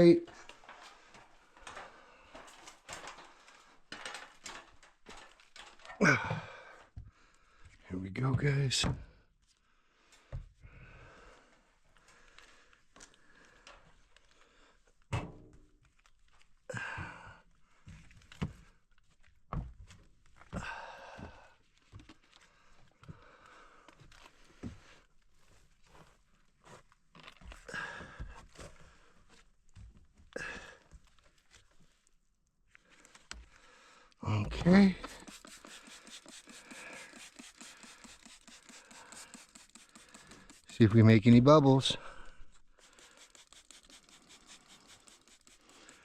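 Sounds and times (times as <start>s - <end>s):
spray bottle hissing bursts: 34.8s - 40.9s, 42.8s - 46.0s.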